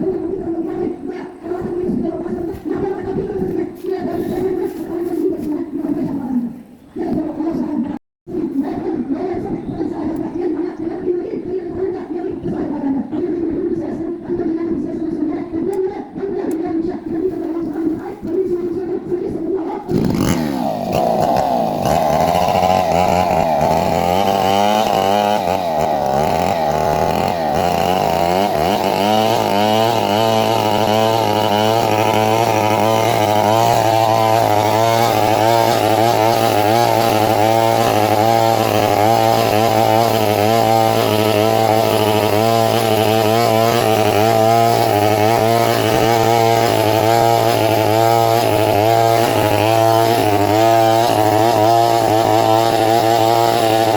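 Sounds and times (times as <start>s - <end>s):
chainsaw cutting wood: 19.8s - 53.9s.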